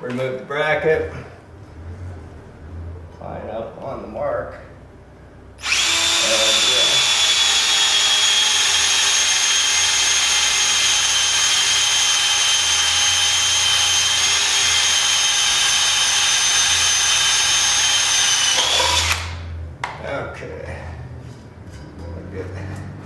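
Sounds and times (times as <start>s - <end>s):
electric drill whining: 5.6s - 19.4s.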